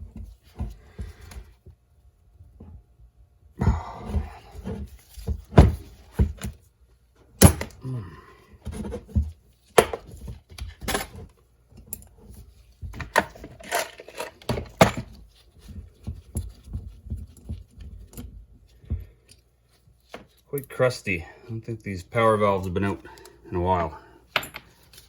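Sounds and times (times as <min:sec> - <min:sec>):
tools clinking on metal parts: 0:13.0 - 0:15.1.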